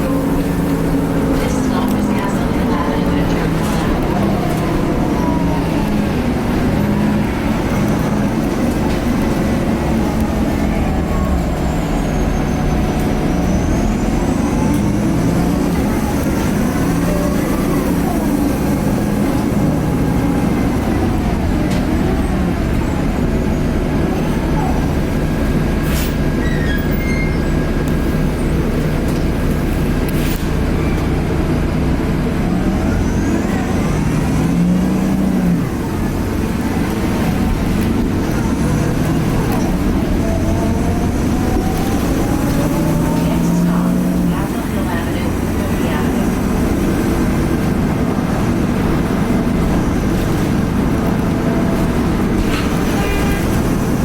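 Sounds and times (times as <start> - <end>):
bus diesel engine rumble: 0.0 - 54.0.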